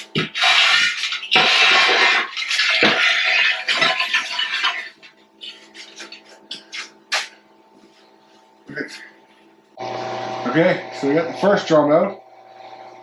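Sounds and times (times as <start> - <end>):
steady hum: 4.7 - 13.0.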